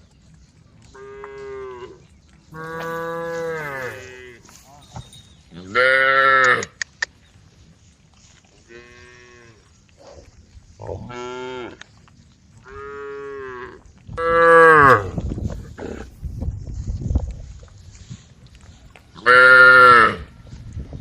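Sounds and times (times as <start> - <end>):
cattle mooing: 0.9 - 4.6, 12.6 - 15.2.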